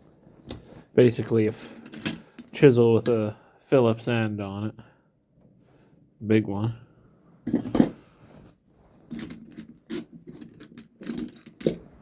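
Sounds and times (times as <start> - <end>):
metal hand tools clattering: 0.5 - 3.2, 9.1 - 12.0.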